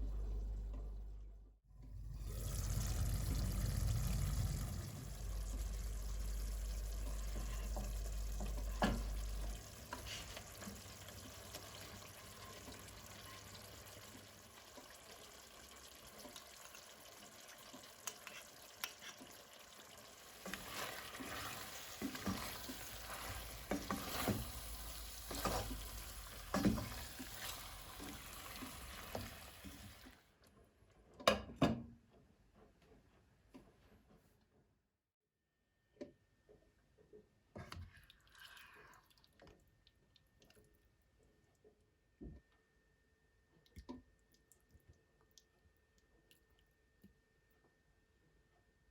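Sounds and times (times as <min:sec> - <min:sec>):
low hum: 0:00.0 - 0:09.6
food sizzling in frying pan: 0:02.2 - 0:30.0
utensil scraping pan: 0:20.4 - 0:27.6.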